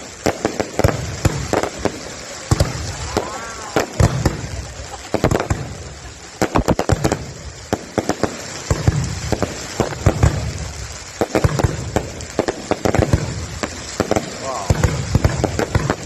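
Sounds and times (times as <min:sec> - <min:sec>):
fireworks exploding: 0:00.0 - 0:16.0.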